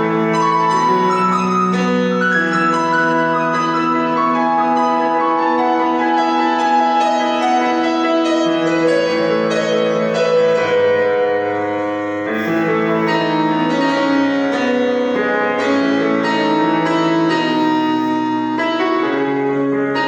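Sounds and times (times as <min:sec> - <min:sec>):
slow solo piano: 0:00.0 - 0:20.0.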